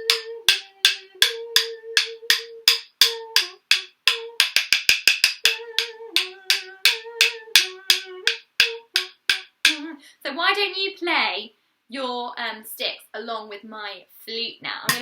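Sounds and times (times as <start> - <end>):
wooden sticks tapping together: 0.0 - 9.8.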